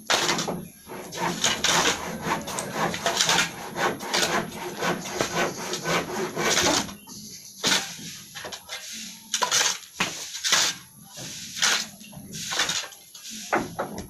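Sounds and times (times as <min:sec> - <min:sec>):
tool rasping strokes: 0:00.1 - 0:07.0.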